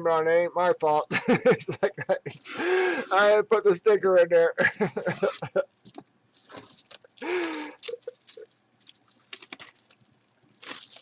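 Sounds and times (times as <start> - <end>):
packaging crinkling and rustling: 5.2 - 11.0.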